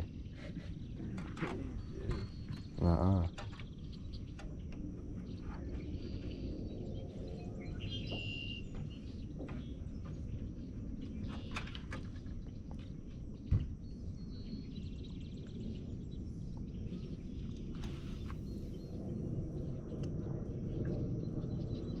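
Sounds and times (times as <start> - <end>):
birds chirping: 0.0 - 11.7, 13.3 - 19.3
low rumble: 13.9 - 22.0.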